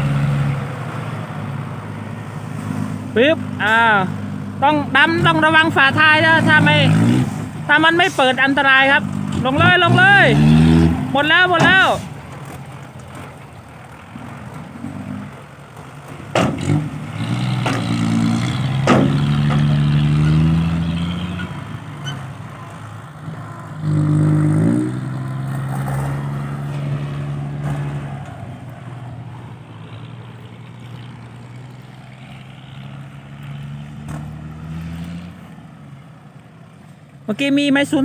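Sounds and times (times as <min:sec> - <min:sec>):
heavy vehicle engine revving: 0:00.0 - 0:35.6
sharp bangs: 0:18.7 - 0:19.7.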